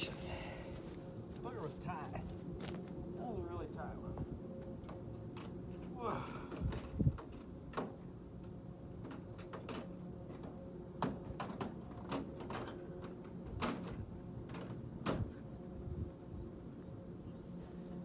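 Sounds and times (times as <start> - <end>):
steady low hum: 0.0 - 3.2.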